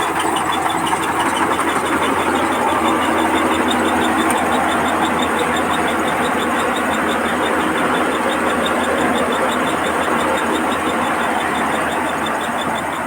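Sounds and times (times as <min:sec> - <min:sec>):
combine harvester running: 0:00.0 - 0:13.0
fast regular ticking: 0:00.0 - 0:13.0.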